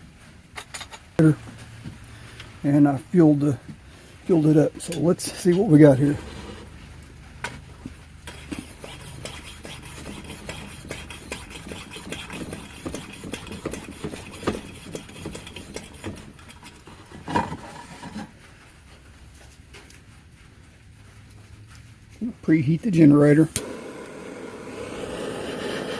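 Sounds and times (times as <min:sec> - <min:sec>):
hand pump clicks and strokes: 0:08.2 - 0:17.3.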